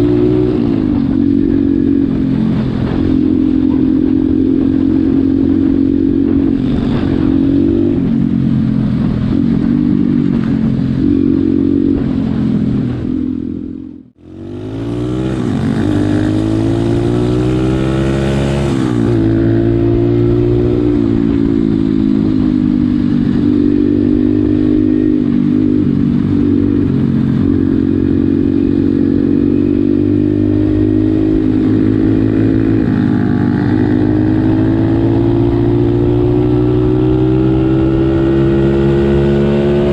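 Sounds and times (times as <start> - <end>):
pit bike engine revving: 14.2 - 39.9.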